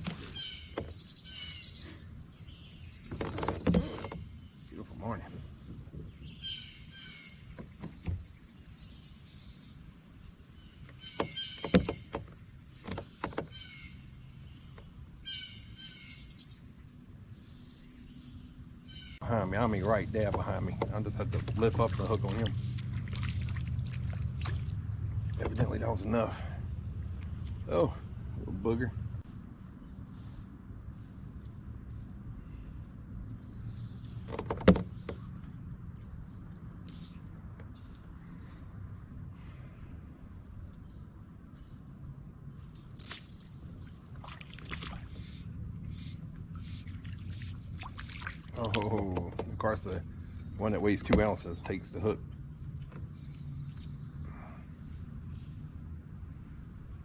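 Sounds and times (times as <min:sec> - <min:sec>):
insects humming: 0:00.0 - 0:57.0
wild birds singing: 0:00.0 - 0:57.0
sharp knocks and clicks: 0:11.2 - 0:13.5, 0:20.2 - 0:21.7, 0:34.3 - 0:35.2.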